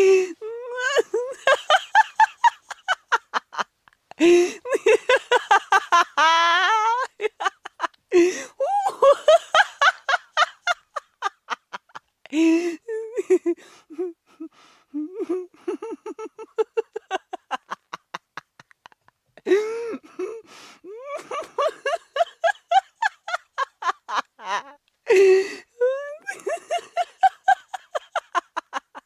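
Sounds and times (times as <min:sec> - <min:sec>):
woman laughing hard: 0:00.0 - 0:29.0
woman gasping in-breaths: 0:04.2 - 0:04.7, 0:08.1 - 0:08.7, 0:12.3 - 0:12.8, 0:19.4 - 0:20.9, 0:25.1 - 0:25.8.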